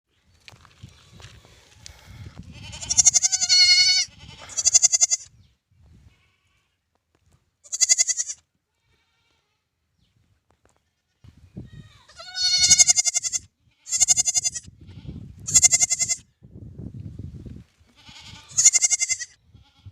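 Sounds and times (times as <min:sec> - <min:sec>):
lamb bleating: 0:01.8 - 0:05.3, 0:07.6 - 0:09.6, 0:11.0 - 0:16.3, 0:17.9 - 0:19.9.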